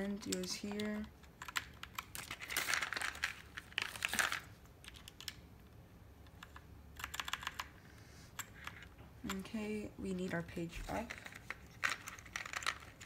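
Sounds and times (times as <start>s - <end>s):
plastic bag crinkling: 2.1s - 4.6s.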